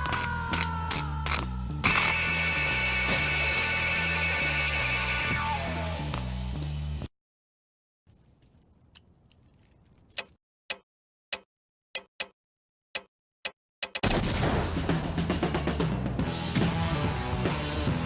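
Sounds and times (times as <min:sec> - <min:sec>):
loud music with drums: 0:14.6 - 0:18.0.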